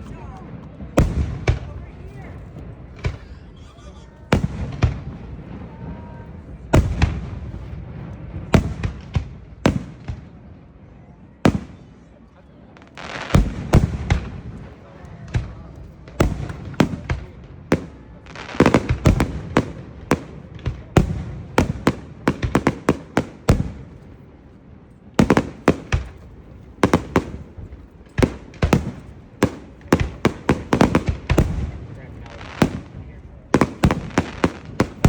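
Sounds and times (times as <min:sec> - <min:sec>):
fireworks bangs and crackling: 0:00.0 - 0:35.0.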